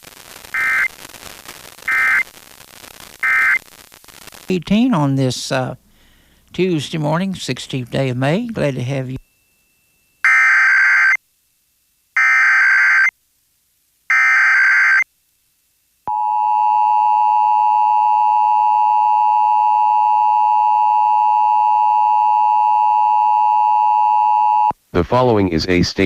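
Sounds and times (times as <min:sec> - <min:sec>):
bursts of data tones: 0:00.4 - 0:01.0, 0:01.8 - 0:02.4, 0:03.1 - 0:04.5, 0:14.1 - 0:15.0.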